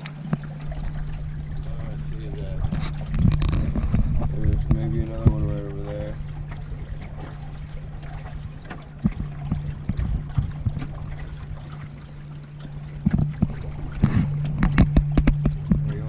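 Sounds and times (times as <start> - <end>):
boat motor humming: 0.0 - 16.0
water lapping on hull: 0.0 - 16.0.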